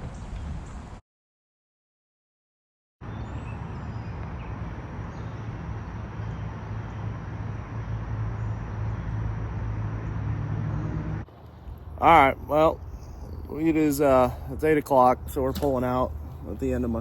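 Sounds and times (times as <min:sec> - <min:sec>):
road and wind noise: 0:00.0 - 0:01.0, 0:03.0 - 0:17.0
vehicle humming: 0:03.0 - 0:17.0.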